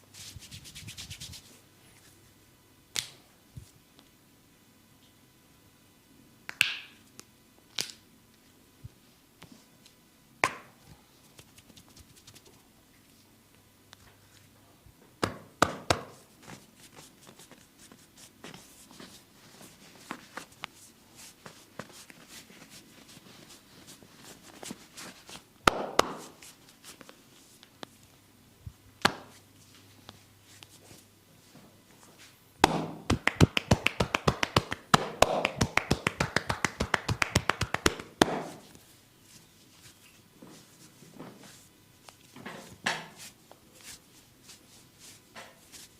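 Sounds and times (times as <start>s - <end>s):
hands slapping skin: 11.3s - 12.5s, 15.2s - 16.2s, 25.6s - 26.4s, 29.0s - 29.4s, 32.6s - 38.7s.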